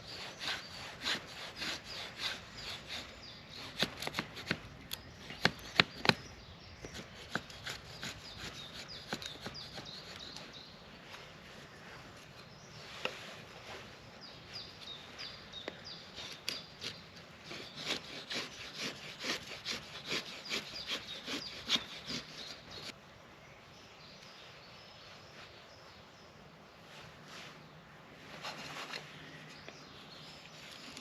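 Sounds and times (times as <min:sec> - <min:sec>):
knife scraping wood: 0:16.2 - 0:22.9.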